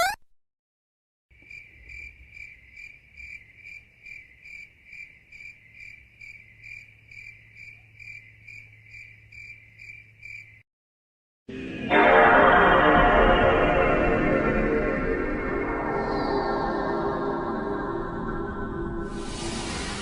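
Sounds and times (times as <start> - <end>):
cricket chirping: 1.4 - 10.6.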